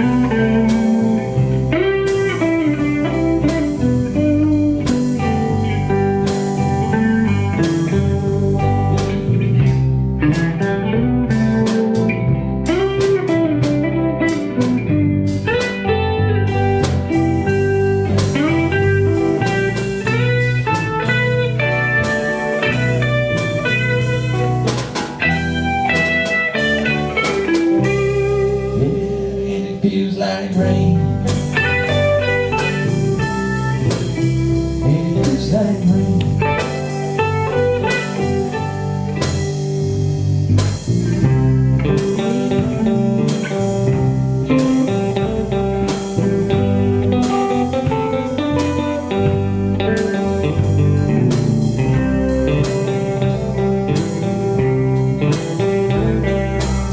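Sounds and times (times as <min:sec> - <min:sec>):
blues band playing: 0:00.0 - 0:56.9
guitar lines: 0:00.0 - 0:56.9.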